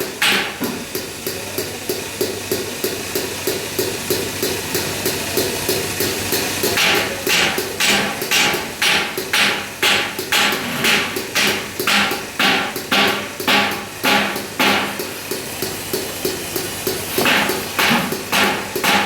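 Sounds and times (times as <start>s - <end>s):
hammer striking metal strip: 0.2s - 0.8s, 6.8s - 15.1s, 17.2s - 19.0s.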